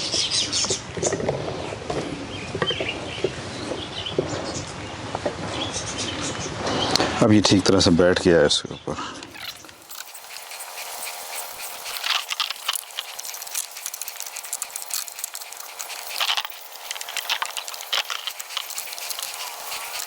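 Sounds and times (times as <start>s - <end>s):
chainsaw parts clicking and rattling: 9.2s - 20.0s.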